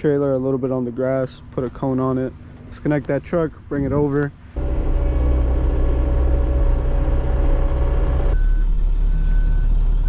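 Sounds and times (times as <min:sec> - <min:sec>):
work vehicle engine running: 0:04.6 - 0:10.0
reversing alarm beeps: 0:08.2 - 0:09.7.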